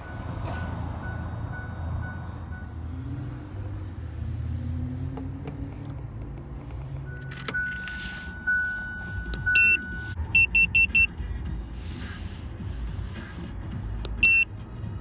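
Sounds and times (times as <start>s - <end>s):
vehicle engine rumble: 0.0s - 15.0s
electronic beeps: 8.5s - 11.1s, 14.2s - 14.5s.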